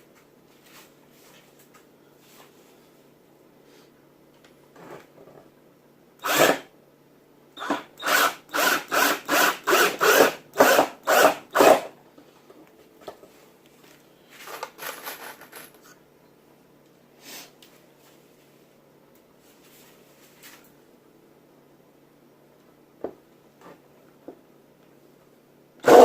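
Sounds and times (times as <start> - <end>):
cordless drill driving screw into wood: 6.2 - 6.7, 7.6 - 11.9.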